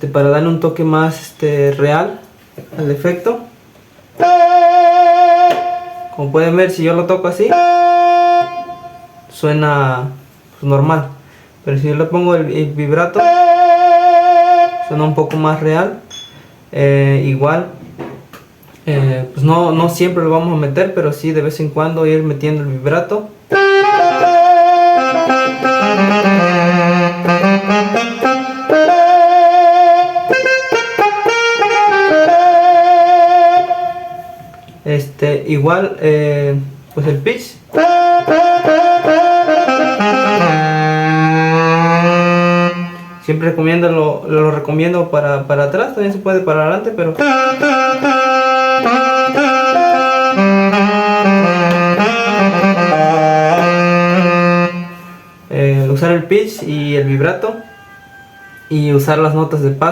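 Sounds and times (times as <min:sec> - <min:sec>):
keyboard saxophone melody: 0:04.0 - 0:09.6, 0:12.8 - 0:15.6, 0:23.3 - 0:34.9, 0:37.1 - 0:43.9, 0:47.0 - 0:59.6
lower accompanying notes: 0:04.2 - 0:09.4, 0:12.9 - 0:15.6, 0:23.5 - 0:34.9, 0:37.7 - 0:43.9, 0:47.1 - 0:55.9, 0:56.6 - 0:59.6.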